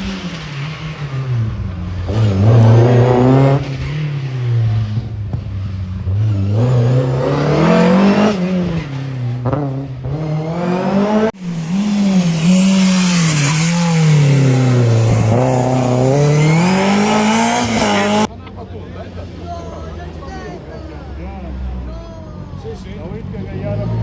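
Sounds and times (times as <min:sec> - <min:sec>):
rally car engine revving: 0:00.0 - 0:24.0.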